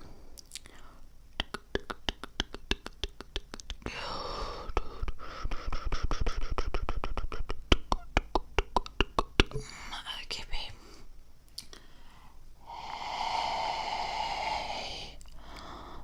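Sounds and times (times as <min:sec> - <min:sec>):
mouth clicks: 0:00.4 - 0:03.9, 0:04.7 - 0:09.6
breathy whisper: 0:11.8 - 0:16.0.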